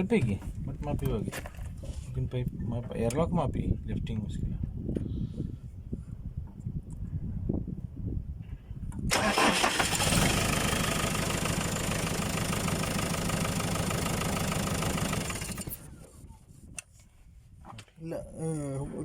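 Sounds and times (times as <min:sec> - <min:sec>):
diesel engine cranking and running: 0:09.1 - 0:15.9.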